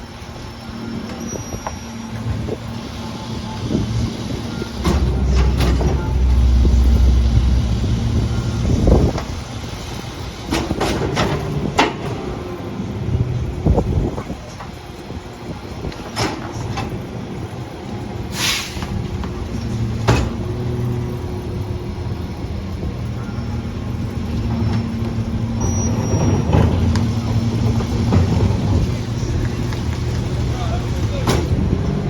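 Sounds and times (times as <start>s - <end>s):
garbage truck engine running: 0.0s - 32.0s
hiss of air: 18.3s - 19.0s.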